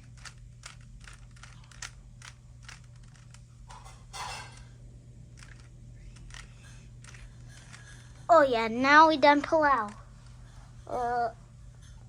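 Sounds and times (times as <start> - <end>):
rasping cube turn: 0.0 - 3.4, 5.4 - 7.8
plastic puzzle cube clicks: 0.1 - 3.4.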